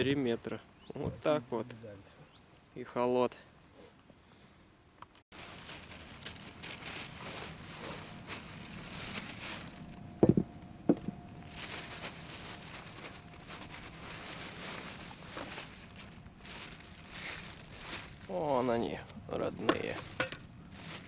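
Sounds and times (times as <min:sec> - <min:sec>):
rustling handling noise: 0:05.3 - 0:21.0
loud short knocks: 0:10.2 - 0:11.2.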